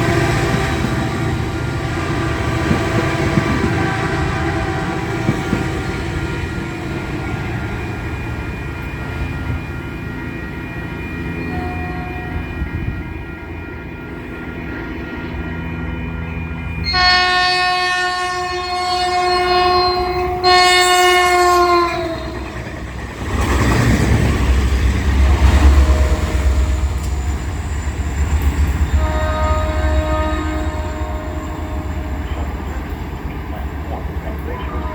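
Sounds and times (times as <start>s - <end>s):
faint horn blast: 0.0s - 6.8s, 16.8s - 22.6s, 29.0s - 32.6s, 34.2s - 34.9s
train horn blasts: 0.0s - 8.0s, 11.4s - 14.5s, 15.2s - 22.7s, 25.2s - 27.4s, 28.8s - 32.7s, 34.3s - 34.9s
train passing rumble: 0.0s - 34.9s.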